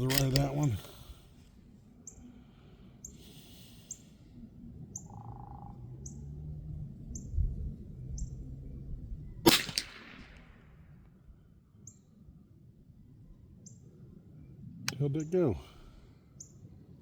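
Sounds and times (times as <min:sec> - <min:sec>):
rifle shot: 0:09.4 - 0:10.8.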